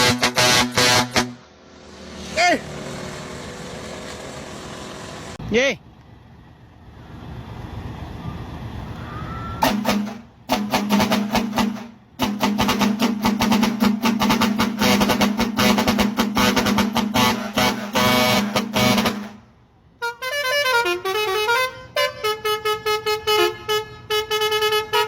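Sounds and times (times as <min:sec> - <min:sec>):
vehicle musical horn pulsing: 0:00.0 - 0:01.5, 0:09.6 - 0:25.0
noisy rumble: 0:00.0 - 0:20.0.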